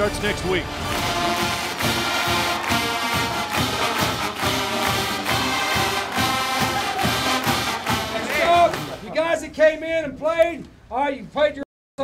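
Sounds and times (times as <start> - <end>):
background music with steady beat: 0.0 - 9.1.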